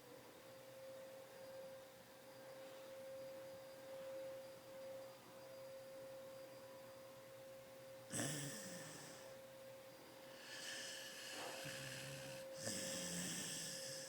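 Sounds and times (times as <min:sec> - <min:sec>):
dog breathing: 0:08.1 - 0:09.4, 0:10.3 - 0:14.0.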